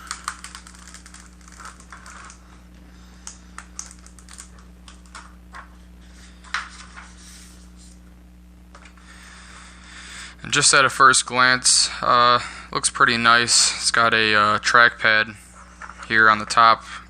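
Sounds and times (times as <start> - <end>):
plastic film crinkling: 0.0 - 2.6, 3.2 - 8.0.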